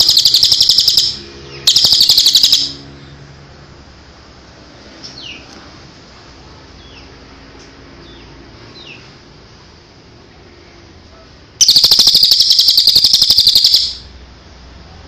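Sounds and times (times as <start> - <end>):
songbird chirping and trilling: 0.0 - 3.0, 11.6 - 14.1.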